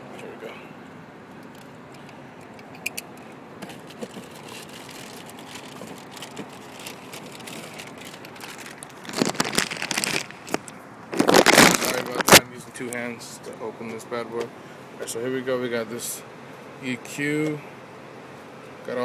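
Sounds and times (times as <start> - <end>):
plastic packaging crinkling: 3.8 - 12.4.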